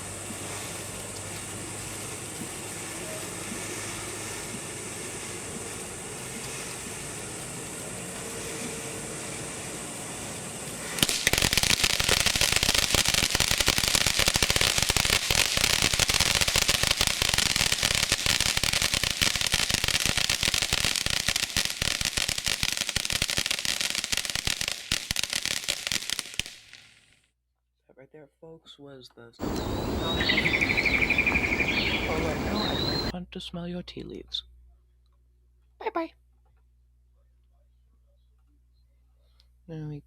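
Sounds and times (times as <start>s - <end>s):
firework crackling: 0.0s - 27.2s, 29.4s - 33.1s.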